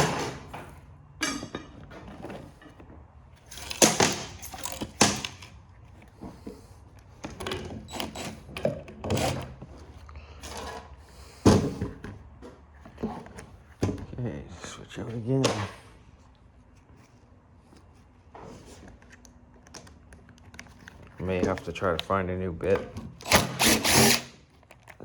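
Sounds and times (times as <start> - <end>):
metal clanks and knocks: 0.0 - 5.4.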